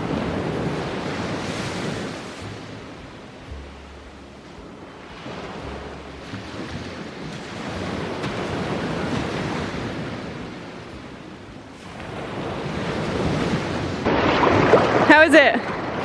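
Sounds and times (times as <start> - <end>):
surf washing onto beach: 0.0 - 16.0
wind buffeting microphone: 0.0 - 16.0.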